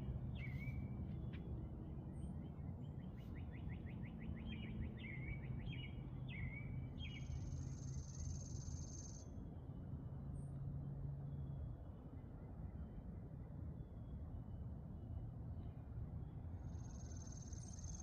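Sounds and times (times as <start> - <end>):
songbirds chirping: 0.0 - 9.3
constant low rumble: 0.0 - 18.0.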